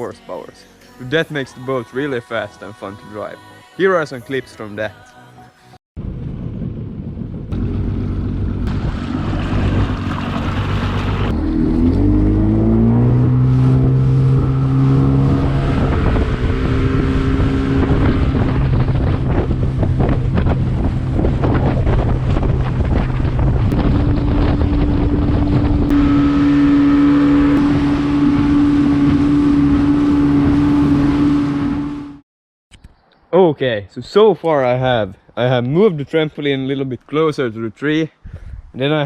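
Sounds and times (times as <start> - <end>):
wind on microphone: 6.0 - 32.2, 38.2 - 38.8
motorboat engine: 6.4 - 32.2.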